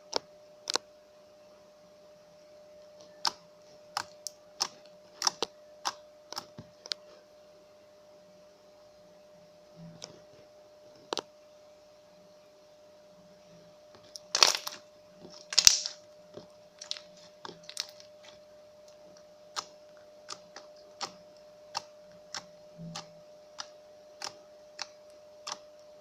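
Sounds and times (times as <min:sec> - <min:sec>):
slime squelching: 0:14.0 - 0:25.6.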